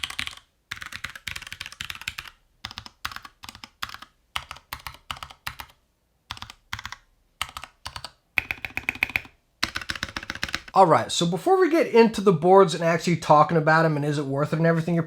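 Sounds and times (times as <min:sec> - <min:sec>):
mechanical keyboard typing: 0:00.0 - 0:10.8.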